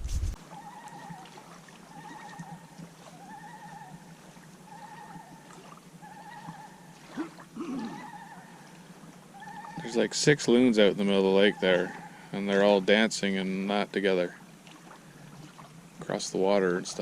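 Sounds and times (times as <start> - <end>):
loons tremolo call: 1.9 - 5.4, 6.0 - 7.0, 7.7 - 8.7, 9.3 - 10.0.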